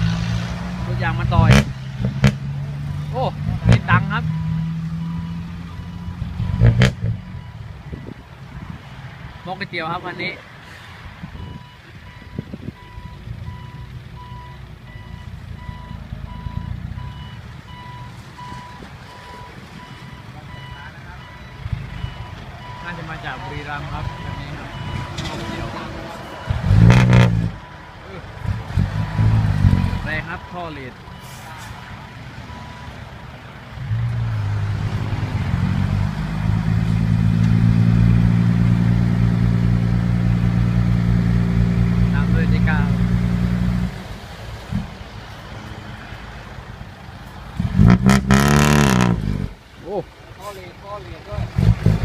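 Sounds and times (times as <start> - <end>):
truck engine rumbling: 0.0 - 52.0
reversing alarm beeps: 11.4 - 27.9, 29.8 - 31.4.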